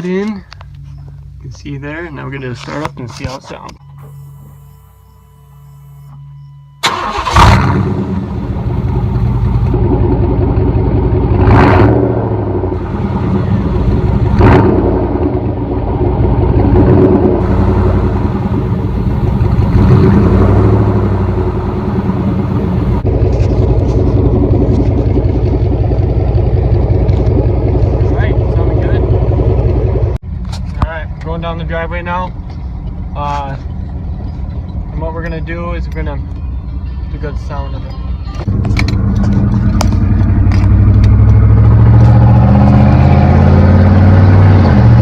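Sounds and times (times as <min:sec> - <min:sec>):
truck engine starting and revving: 0:06.8 - 0:30.2, 0:38.4 - 0:45.0.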